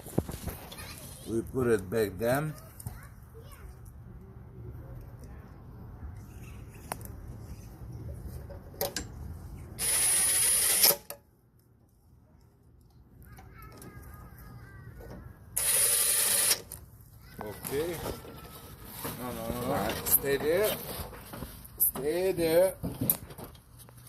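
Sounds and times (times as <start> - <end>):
power drill driving bolts: 9.8 - 11.2, 15.6 - 16.7.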